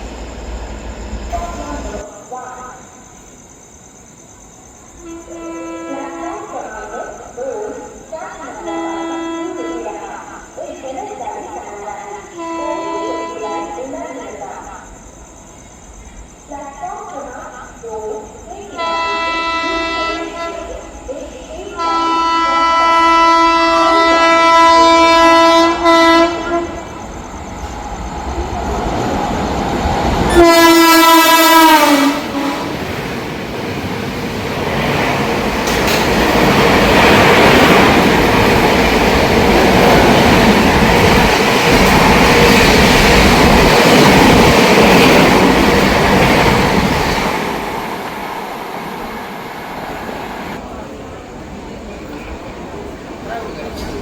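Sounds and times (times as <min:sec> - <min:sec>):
train wagons rattling over rails: 0:00.7 - 0:02.1, 0:26.5 - 0:54.0
diesel locomotive horn: 0:05.0 - 0:06.4, 0:08.6 - 0:10.0, 0:12.2 - 0:13.8, 0:18.8 - 0:20.7, 0:21.8 - 0:27.0, 0:30.3 - 0:32.8.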